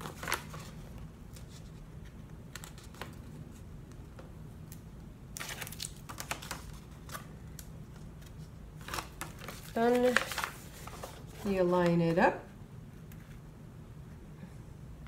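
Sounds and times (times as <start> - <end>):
paper envelopes tapping and rustling: 0.0 - 1.7, 5.4 - 12.0
faint low hum: 0.0 - 15.0.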